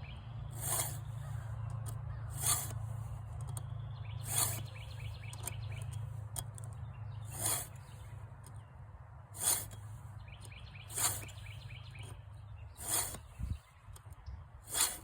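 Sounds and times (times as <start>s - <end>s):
file rasping on saw chain: 0.6s - 1.4s, 2.3s - 2.8s, 4.2s - 4.8s, 7.3s - 8.0s, 9.4s - 9.8s, 10.8s - 11.6s, 12.8s - 13.5s, 14.7s - 15.0s.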